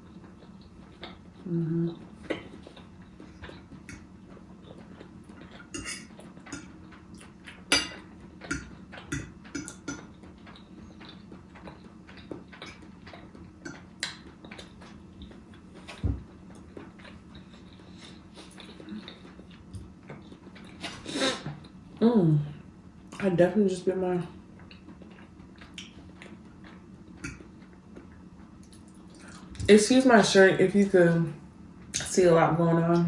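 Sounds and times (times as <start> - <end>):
steady low hum: 0.0 - 33.0
cutlery clinking on a plate: 5.8 - 6.7, 7.7 - 10.1.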